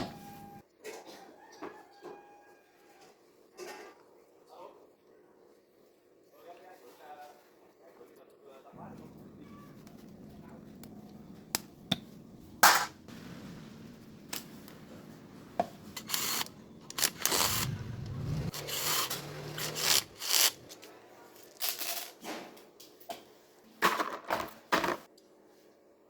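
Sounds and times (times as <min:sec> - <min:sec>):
rubbing and scraping strokes: 0:10.8 - 0:20.9.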